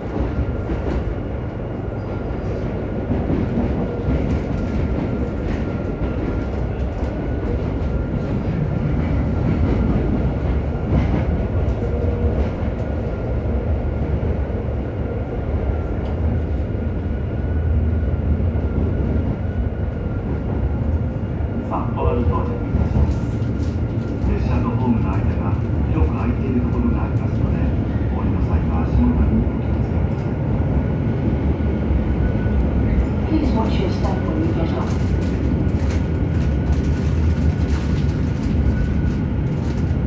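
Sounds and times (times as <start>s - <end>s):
train car rumbling on rails: 0.0s - 40.0s.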